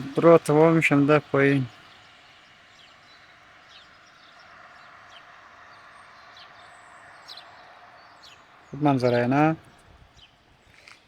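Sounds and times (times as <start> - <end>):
faint birds chirping: 0.0 - 11.0
outdoor background hiss: 0.0 - 11.0.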